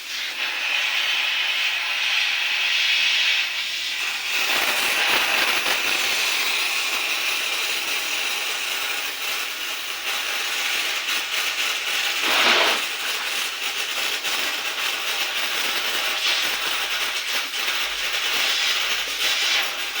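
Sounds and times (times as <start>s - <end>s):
refrigerant gas hissing: 0.0s - 20.0s.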